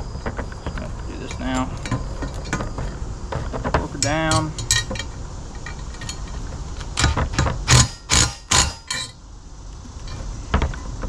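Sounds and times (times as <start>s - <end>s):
sharp metal knocks and clanks: 0.2s - 9.2s.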